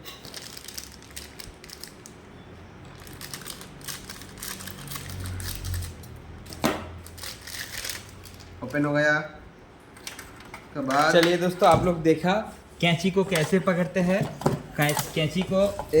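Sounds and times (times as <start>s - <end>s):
packaging clicks and rustles: 0.2s - 8.8s, 13.1s - 16.0s.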